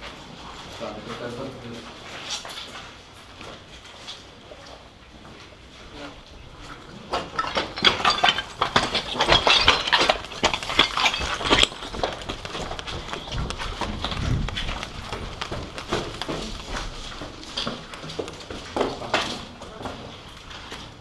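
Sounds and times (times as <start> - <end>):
clicks and knocks: 7.1 - 19.5.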